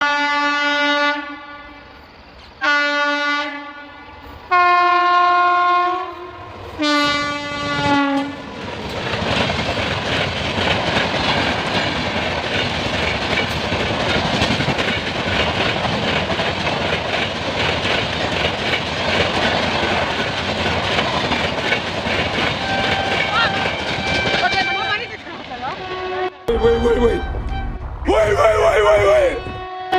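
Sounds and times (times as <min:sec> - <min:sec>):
train horn blasts: 0:00.0 - 0:01.9, 0:02.6 - 0:08.5, 0:22.6 - 0:27.8, 0:28.9 - 0:29.9
train passing at speed: 0:01.2 - 0:29.9
wheels clattering over rails: 0:08.2 - 0:25.7.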